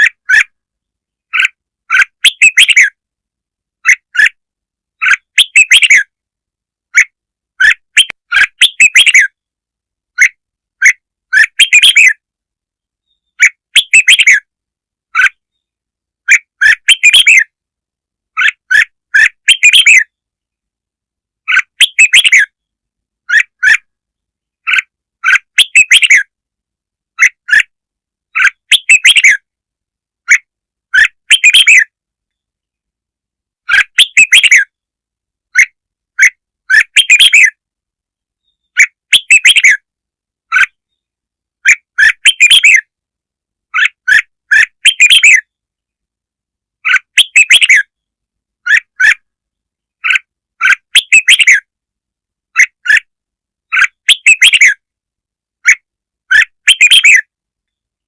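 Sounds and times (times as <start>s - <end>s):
bird chirping phrases: 0.0s - 3.0s, 3.8s - 6.2s, 6.9s - 9.5s, 10.1s - 12.3s, 12.9s - 17.6s, 18.3s - 20.3s, 21.4s - 26.4s, 27.2s - 27.7s, 28.3s - 29.5s, 30.2s - 32.7s, 33.6s - 34.8s, 35.5s - 37.6s, 38.3s - 39.9s, 40.5s - 42.9s, 43.7s - 45.7s, 46.8s - 51.7s, 52.5s - 53.1s, 53.7s - 54.8s, 55.6s - 58.0s.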